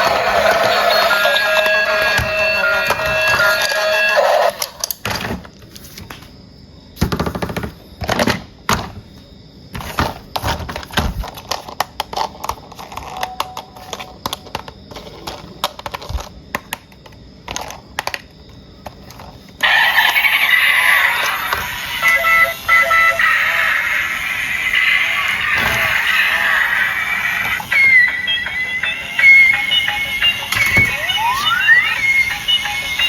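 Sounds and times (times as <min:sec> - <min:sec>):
plastic toys being handled: 0:09.8 - 0:23.0
background music: 0:25.3 - 0:33.0.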